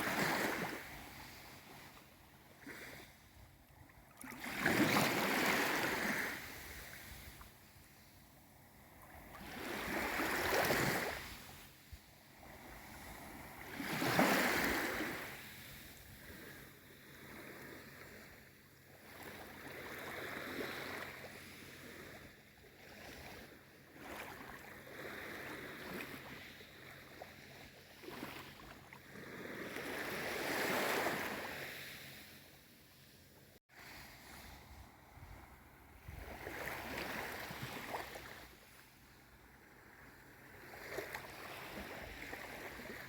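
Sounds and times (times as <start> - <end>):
sea waves washing in: 23.0 - 43.0.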